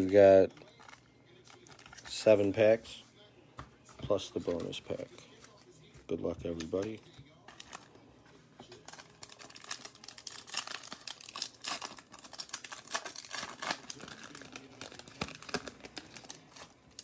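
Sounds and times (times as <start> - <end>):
plastic wrapper tearing and crinkling: 0.0 - 2.5, 6.5 - 8.0, 8.6 - 17.0.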